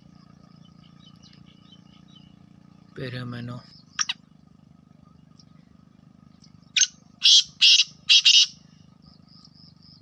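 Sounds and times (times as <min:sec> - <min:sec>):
steady low hum: 0:00.0 - 0:10.0
francolin calling harsh notes: 0:06.8 - 0:08.7.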